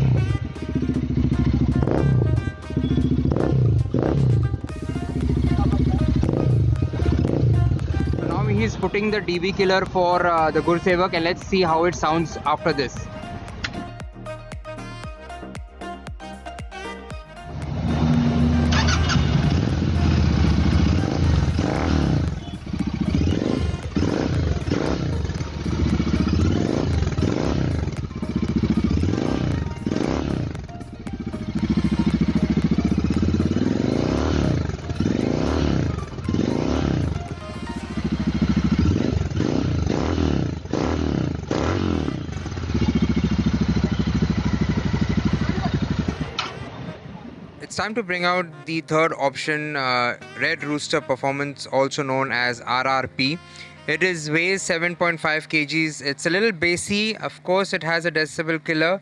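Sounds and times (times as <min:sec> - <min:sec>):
motorcycle engine idling: 0:00.0 - 0:14.0, 0:17.6 - 0:47.0
motorcycle engine revving: 0:00.0 - 0:14.0, 0:17.5 - 0:47.1.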